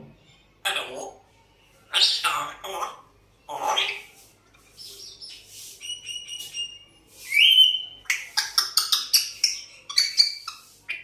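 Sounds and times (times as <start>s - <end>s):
parrot chirping: 1.9s - 11.0s
parrot whistling: 5.8s - 10.5s.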